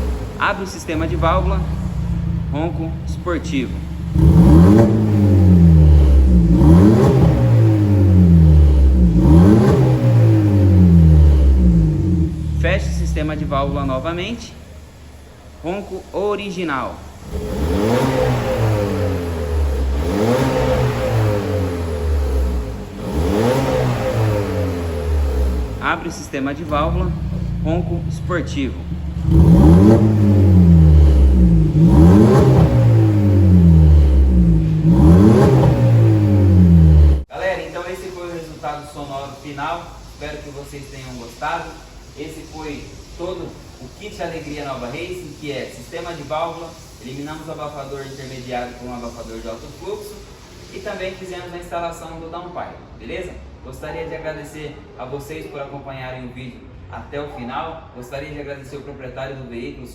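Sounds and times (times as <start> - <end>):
car engine revving: 0.0 - 37.3.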